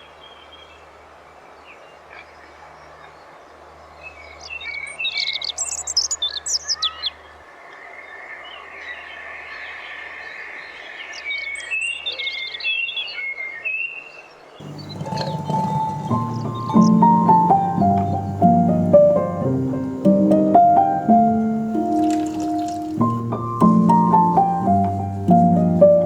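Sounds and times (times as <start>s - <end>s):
songbirds chirping: 0.0s - 26.0s
piano music: 14.6s - 26.0s
whistled bird notes: 14.6s - 26.0s.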